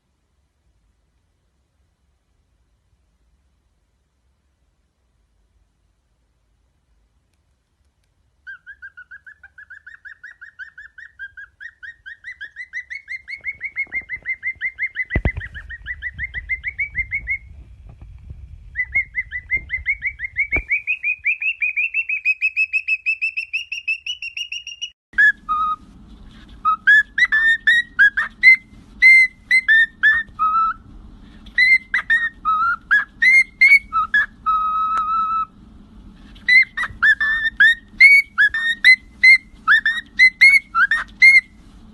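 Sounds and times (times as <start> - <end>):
steady low hum: 0.0 - 22.0, 25.2 - 41.9
parrot chirping: 8.4 - 17.5, 18.7 - 35.6, 36.2 - 41.6
parrot whistling a tune: 8.4 - 17.5, 18.7 - 25.8, 26.6 - 30.8, 31.4 - 35.5, 36.4 - 41.6.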